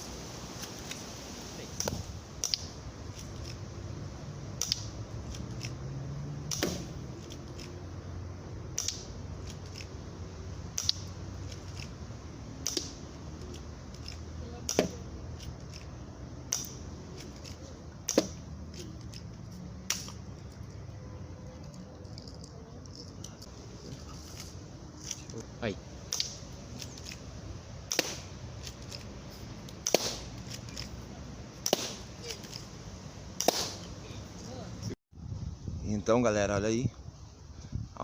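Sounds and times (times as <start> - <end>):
airsoft gun firing: 27.9 - 28.3, 29.8 - 30.3, 31.6 - 32.1, 33.4 - 33.9.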